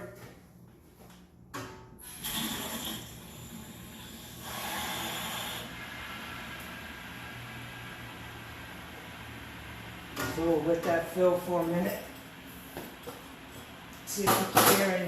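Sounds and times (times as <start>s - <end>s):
water rushing through pipes: 2.0s - 10.8s.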